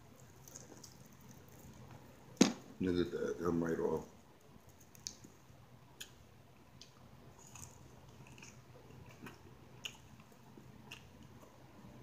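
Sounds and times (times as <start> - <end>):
chewing food: 0.0 - 2.1, 6.0 - 11.7.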